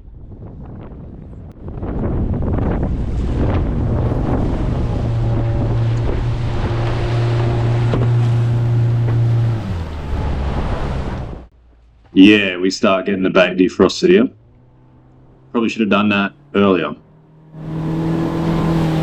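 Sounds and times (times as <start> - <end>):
wind buffeting microphone: 0.0 - 11.5
outboard motor running: 1.6 - 11.5, 14.3 - 19.0
waves washing: 1.9 - 11.5.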